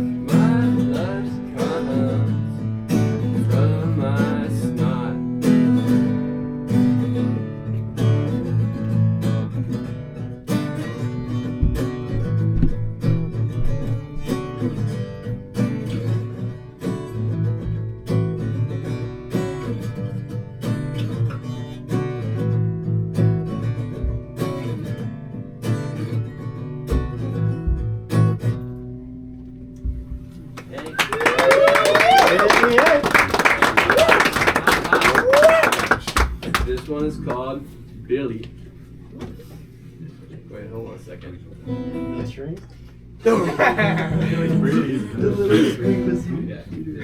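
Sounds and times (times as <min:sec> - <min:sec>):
acoustic guitar strumming: 0:00.0 - 0:30.8, 0:41.6 - 0:46.9.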